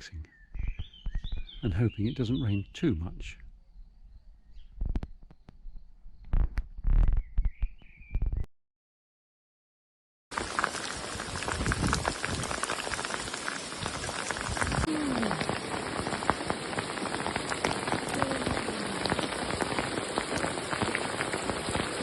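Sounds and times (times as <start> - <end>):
heavy rain: 10.3 - 22.0.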